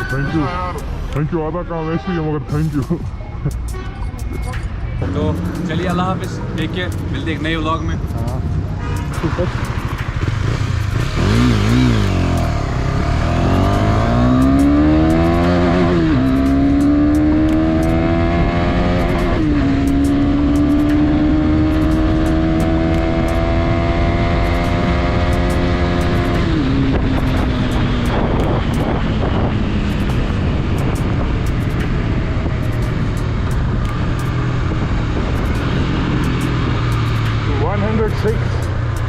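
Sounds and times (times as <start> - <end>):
motorcycle engine accelerating: 5.0 - 39.0
wind rush: 17.2 - 37.8.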